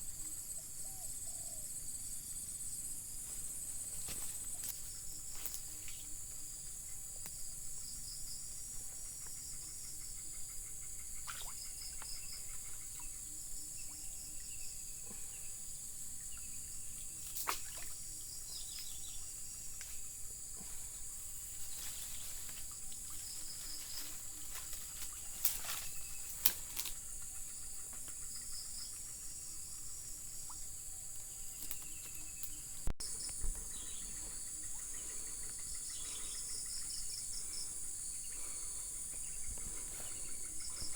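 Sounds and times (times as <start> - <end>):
pulsing insect trill: 0.0 - 40.9
insect chorus shrilling: 20.8 - 40.9.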